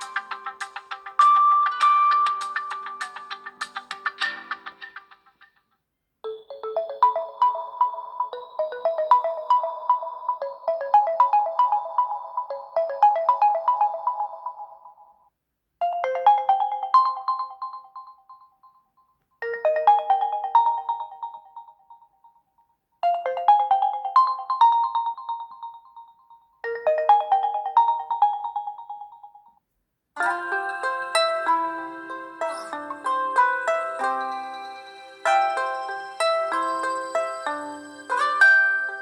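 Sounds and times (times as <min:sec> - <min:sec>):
plucked-string ringtone: 0:00.0 - 0:05.0, 0:30.2 - 0:39.0
phone ringtone melody: 0:00.0 - 0:05.1, 0:06.3 - 0:15.2, 0:15.9 - 0:18.4, 0:19.4 - 0:22.2, 0:23.1 - 0:29.6, 0:30.2 - 0:39.0.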